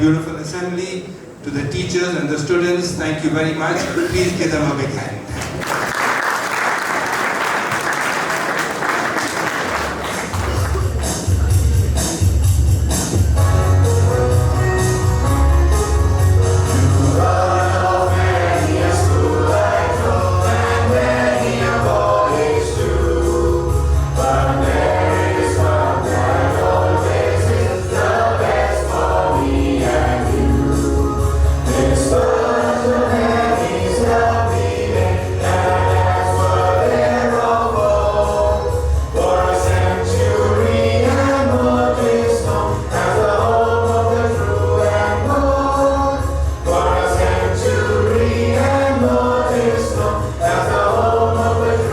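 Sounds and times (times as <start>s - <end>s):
bass accompaniment: 9.9s - 51.9s
choir singing: 16.2s - 51.9s.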